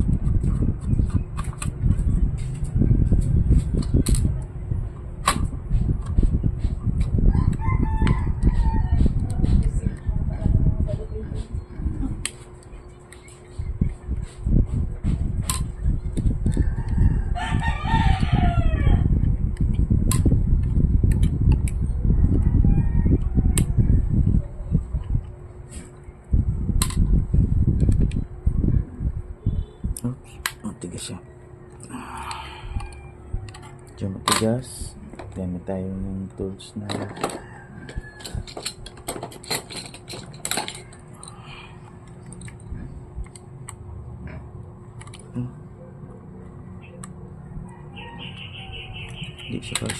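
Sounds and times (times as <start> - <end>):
steady low rumble: 0.0 - 49.9
rooster crowing: 7.3 - 9.5, 16.5 - 19.2, 22.0 - 24.2, 32.0 - 33.5, 37.0 - 38.7, 47.6 - 49.1.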